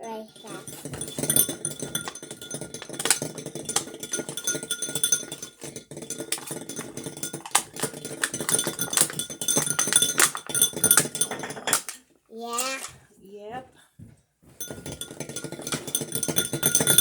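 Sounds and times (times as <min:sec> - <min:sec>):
utensil beating in mixing bowl: 0:00.0 - 0:13.1, 0:14.6 - 0:17.0.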